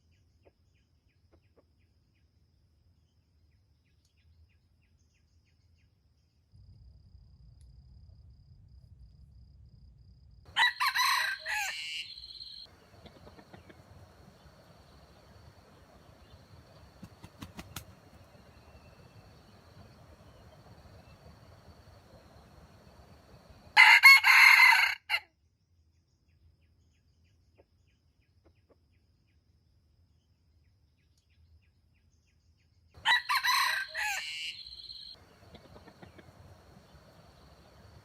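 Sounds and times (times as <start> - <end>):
rooster crowing: 10.5 - 25.2, 33.0 - 38.0.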